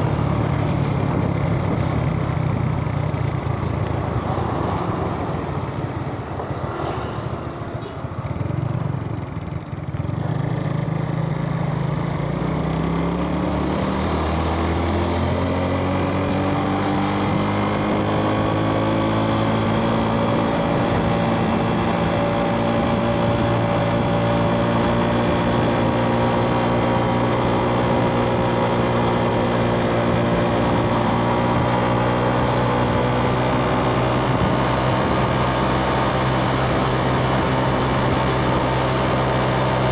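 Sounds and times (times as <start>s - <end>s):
motorbike engine revving: 10.2s - 39.9s.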